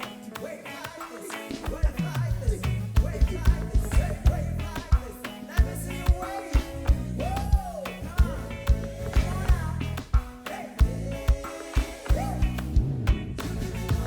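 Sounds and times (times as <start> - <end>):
reggae band playing: 0.0 - 14.0
bass and drum kit beat: 1.6 - 14.0
lead melody line: 3.0 - 14.0.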